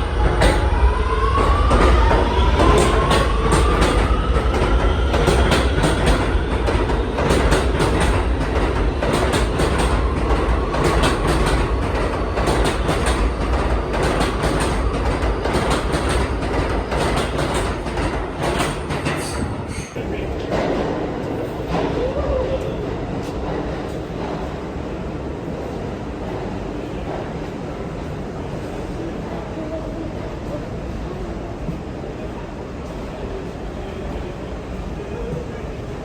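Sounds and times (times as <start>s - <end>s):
train wheels clacking on rails: 0.0s - 24.7s
train low rumble: 0.0s - 36.0s.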